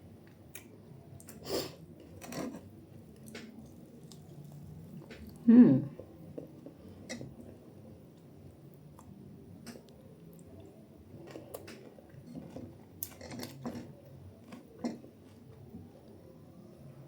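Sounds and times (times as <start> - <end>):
wet chewing: 11.2 - 15.5.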